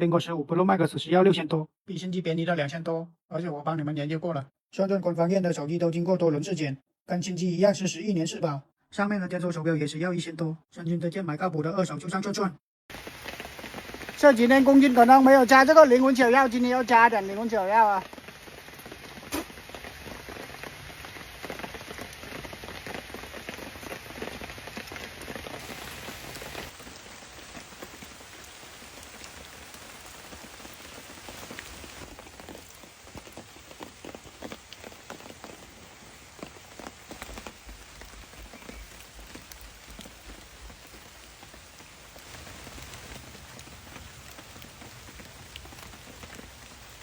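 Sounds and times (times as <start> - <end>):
rain pattering: 12.9 - 47.0.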